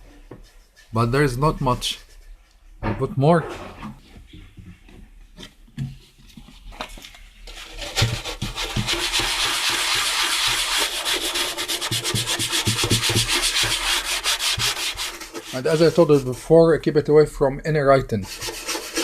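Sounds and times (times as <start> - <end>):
scrubbing plastic: 7.4 - 16.6, 18.1 - 19.0.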